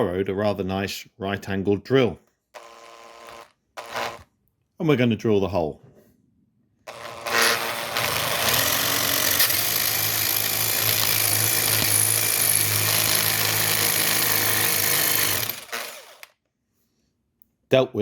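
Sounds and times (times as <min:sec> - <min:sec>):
power drill boring metal: 0:02.6 - 0:04.2, 0:06.9 - 0:16.3.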